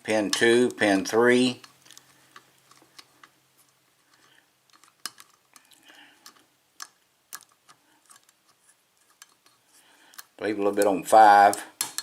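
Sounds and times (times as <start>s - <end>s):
lock pick scraping pins: 4.1s - 12.0s.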